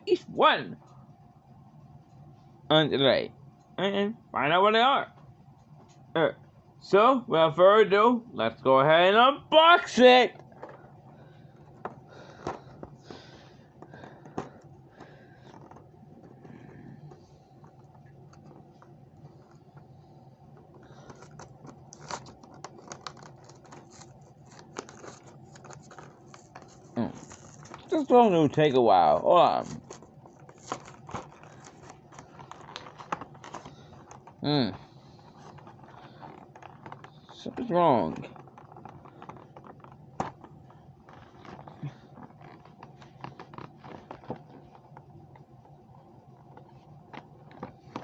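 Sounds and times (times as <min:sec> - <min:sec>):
hands handling cardboard packaging: 0:20.5 - 0:28.2, 0:29.1 - 0:34.4.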